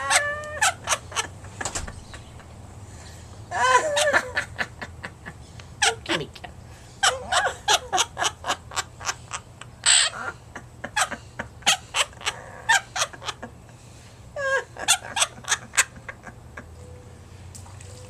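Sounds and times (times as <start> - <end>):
parrot squawking and chirping: 0.0 - 2.3, 7.0 - 13.5, 14.3 - 16.0.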